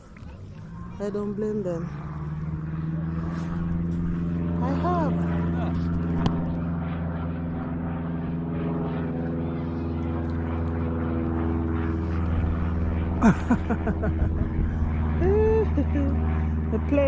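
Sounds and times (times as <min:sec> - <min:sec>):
airplane engine drone: 0:00.0 - 0:17.0.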